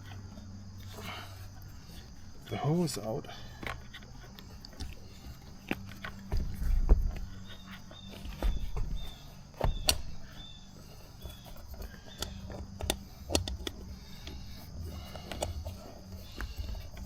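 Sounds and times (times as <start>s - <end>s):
rubber rubbing and handling: 3.5s - 17.0s
sharp clicks and light taps: 11.2s - 17.0s.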